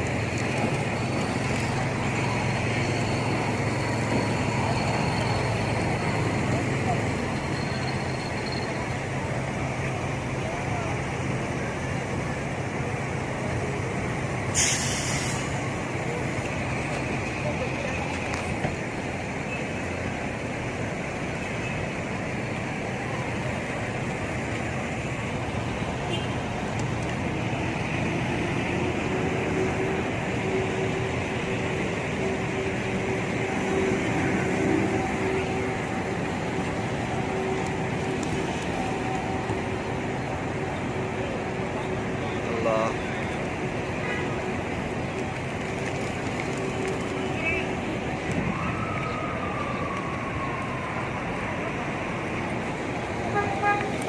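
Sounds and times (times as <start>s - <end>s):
road traffic hum: 0.0s - 54.0s
short loud hiss: 14.6s - 15.6s.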